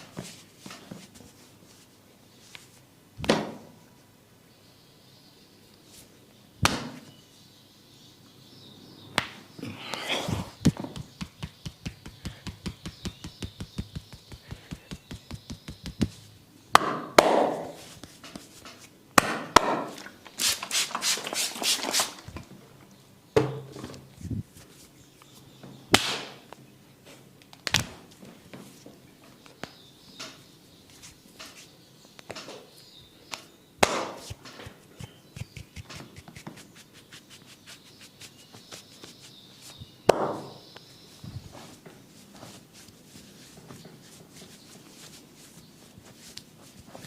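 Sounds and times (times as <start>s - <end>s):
louder hand slaps: 6.6s - 7.0s, 16.8s - 17.8s, 25.9s - 26.4s, 33.8s - 34.4s
hands striking body in massage: 10.6s - 17.8s, 33.8s - 36.7s.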